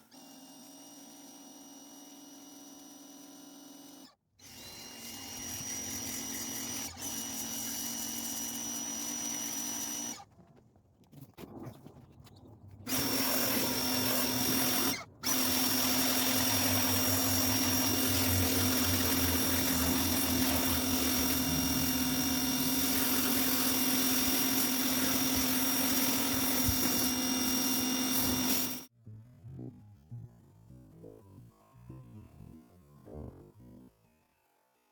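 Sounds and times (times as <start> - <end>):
pressure washer motor whining: 12.9 - 28.9.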